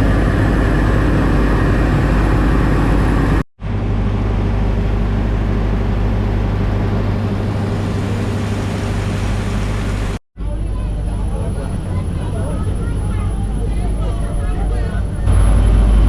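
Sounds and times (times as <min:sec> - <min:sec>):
steam locomotive rumbling: 0:00.0 - 0:10.2.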